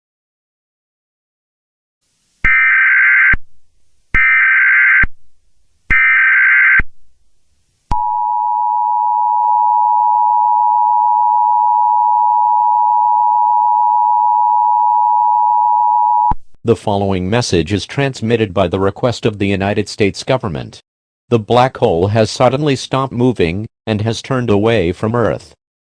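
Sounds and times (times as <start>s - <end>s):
screeching digital header bursts: 2.4s - 3.4s, 4.2s - 5.1s, 5.9s - 6.8s.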